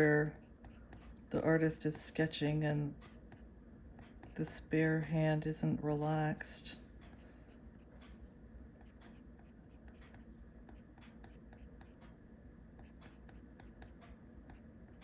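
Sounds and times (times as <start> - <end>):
pencil scratching on paper: 0.0 - 1.2, 2.3 - 4.6, 8.8 - 12.0, 12.8 - 15.0.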